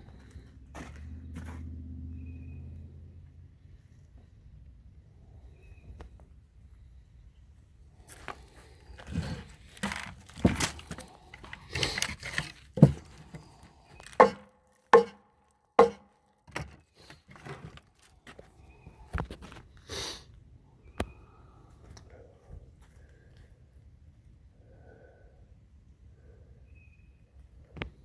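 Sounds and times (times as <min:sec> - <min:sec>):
knocks and clatters with ringing: 0:15.0 - 0:15.2, 0:15.8 - 0:16.8.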